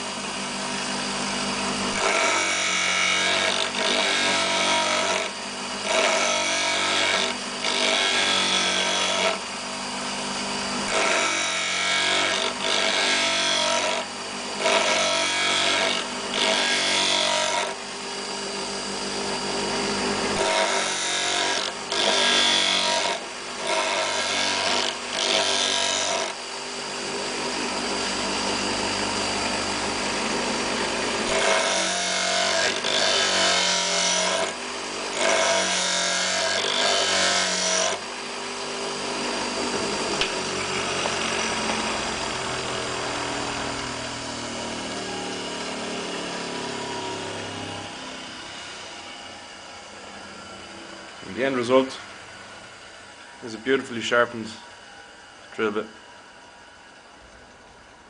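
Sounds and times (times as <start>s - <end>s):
drill bit grinding on wheel: 0.0s - 49.4s
electric grinder running: 0.0s - 52.9s.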